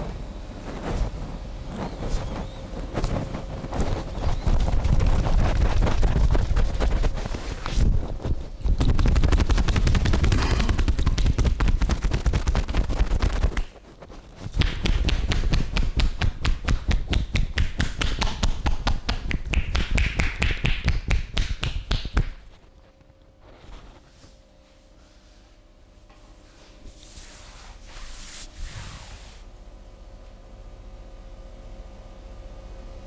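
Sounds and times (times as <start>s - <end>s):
hands slapping on body: 8.8s - 13.7s, 14.5s - 22.6s.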